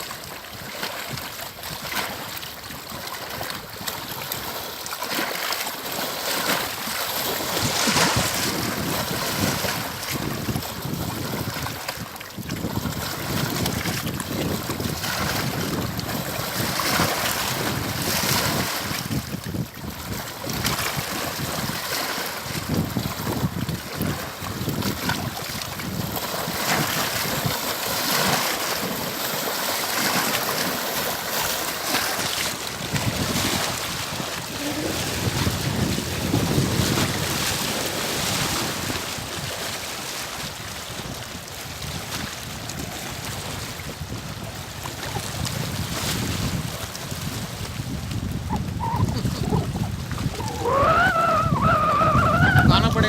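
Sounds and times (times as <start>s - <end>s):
lake water lapping: 0.0s - 53.0s
wind gusting over microphone: 7.3s - 21.8s, 22.4s - 28.4s, 31.8s - 39.8s, 40.6s - 53.0s.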